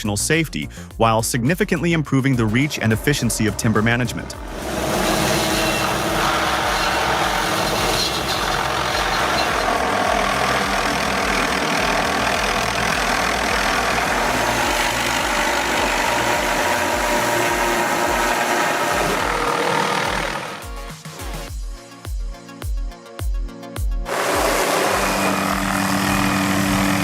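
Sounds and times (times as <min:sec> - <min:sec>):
helicopter rotor beat: 0:01.7 - 0:21.4, 0:24.1 - 0:27.0
helicopter engine noise: 0:02.4 - 0:20.8, 0:24.1 - 0:27.0.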